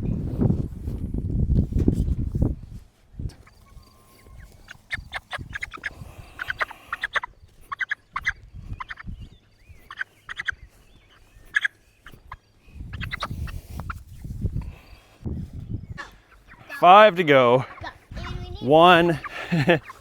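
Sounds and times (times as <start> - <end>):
chickens squawking: 3.4 - 15.1, 15.9 - 20.0.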